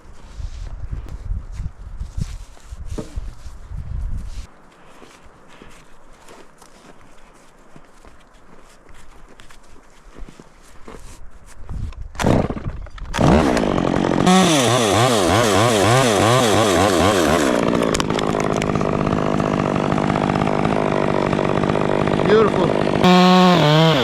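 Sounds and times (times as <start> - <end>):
chainsaw engine revving: 12.2 - 24.0.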